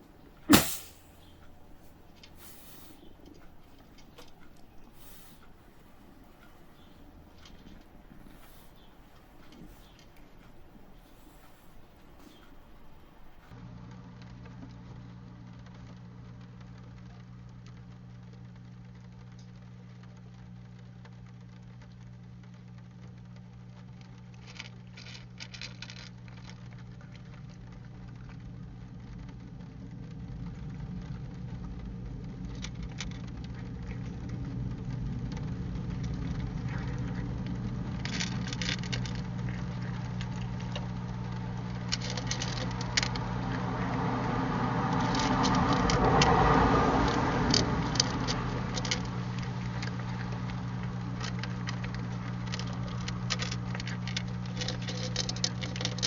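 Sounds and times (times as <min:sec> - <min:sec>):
broad rushing sound: 0:00.0 - 0:13.4
ticks and crackles: 0:00.0 - 0:13.6, 0:14.2 - 0:56.0
low electrical hum: 0:00.0 - 0:56.0.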